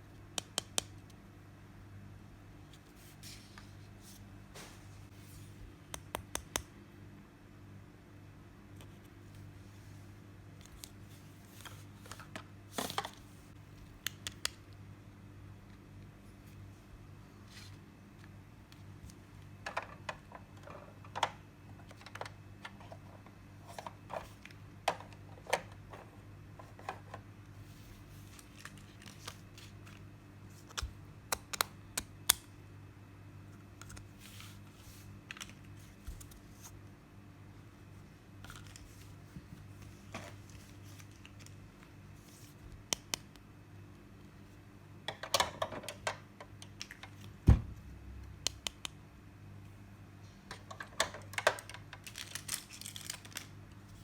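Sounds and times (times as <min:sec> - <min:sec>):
steady low hum: 0:46.1 - 0:50.8.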